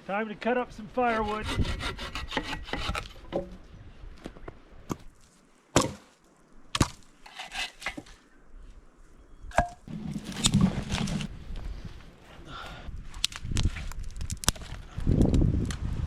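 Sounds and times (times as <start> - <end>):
chopping strikes into wood: 5.8 - 6.0, 6.8 - 7.0.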